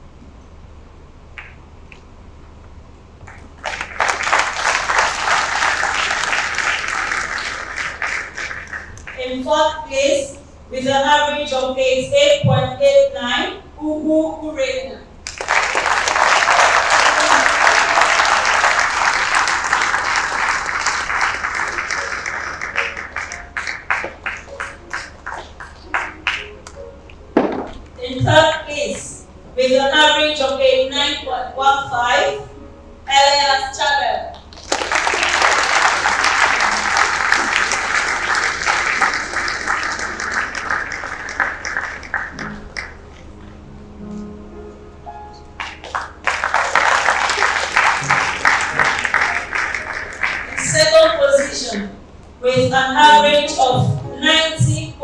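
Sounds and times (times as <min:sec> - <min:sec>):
audience applauding: 0:03.2 - 0:09.3, 0:15.2 - 0:26.8, 0:34.4 - 0:43.4, 0:45.6 - 0:51.6.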